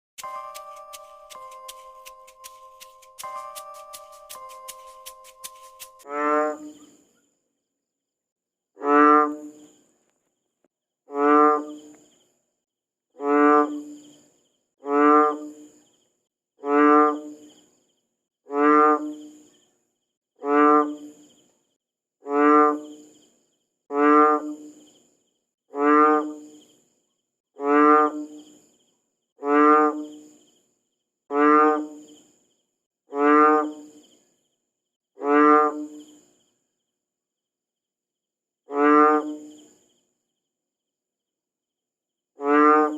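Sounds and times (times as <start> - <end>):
frog croaking: 0.2 - 7.1, 8.8 - 9.8, 11.1 - 12.2, 13.1 - 14.2, 14.8 - 15.9, 16.6 - 17.7, 18.5 - 19.5, 20.4 - 21.3, 22.2 - 23.1, 23.9 - 25.0, 25.7 - 26.8, 27.5 - 28.7, 29.4 - 30.4, 31.3 - 32.3, 33.1 - 34.2, 35.2 - 36.4, 38.7 - 39.8, 42.4 - 42.9.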